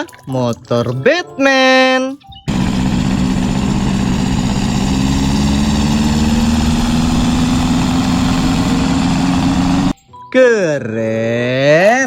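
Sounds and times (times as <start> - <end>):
motor humming: 2.5 - 10.0.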